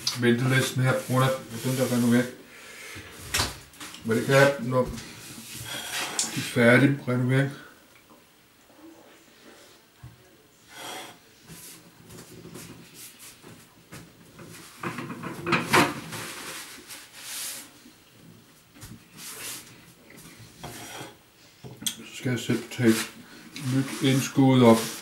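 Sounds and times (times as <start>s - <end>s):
scrapes: 14.4s - 17.8s, 19.2s - 21.2s, 22.4s - 25.0s.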